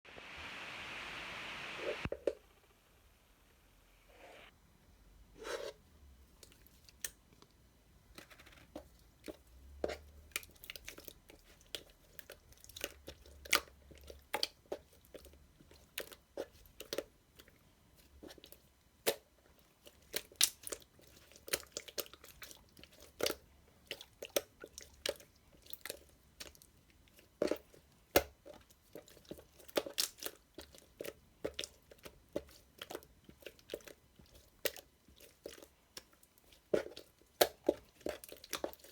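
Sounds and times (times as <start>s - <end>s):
chewing crunchy food: 8.8s - 38.9s.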